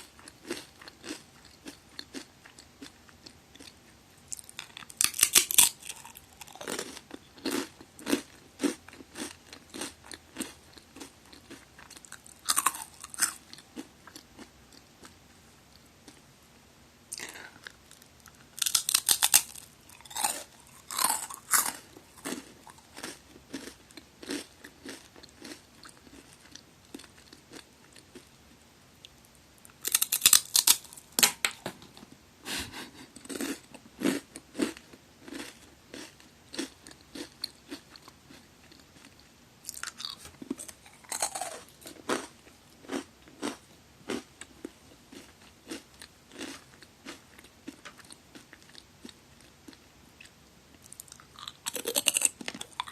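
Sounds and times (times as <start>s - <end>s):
crunchy chewing: 0.0s - 16.2s, 17.1s - 28.4s, 29.0s - 32.0s, 32.7s - 52.9s
cracker crunching bites: 0.2s - 2.9s, 4.3s - 14.5s, 18.6s - 27.6s, 29.8s - 31.6s, 38.7s - 44.2s, 50.8s - 52.9s.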